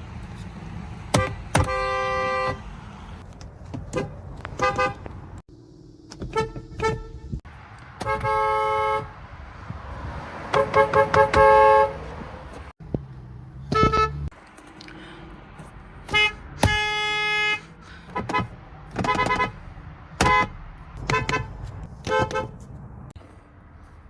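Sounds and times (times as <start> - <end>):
car horns honking: 1.1 - 2.8, 3.9 - 5.2, 6.1 - 7.4, 8.0 - 9.2, 10.4 - 12.3, 12.9 - 14.3, 16.0 - 19.6, 20.2 - 22.8.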